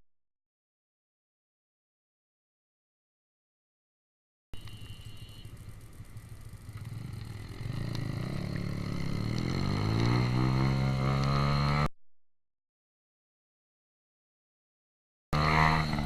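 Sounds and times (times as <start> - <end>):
motorcycle engine accelerating: 4.6 - 11.9, 15.4 - 16.0
road noise: 4.6 - 11.9, 15.4 - 16.0.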